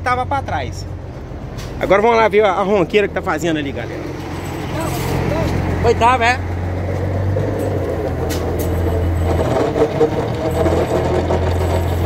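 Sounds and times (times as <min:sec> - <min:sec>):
truck engine droning: 0:00.0 - 0:12.0.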